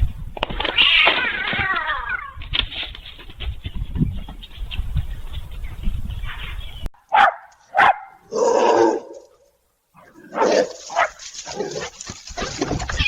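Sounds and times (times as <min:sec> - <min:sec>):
dog barking: 0:07.1 - 0:09.1, 0:10.3 - 0:11.8.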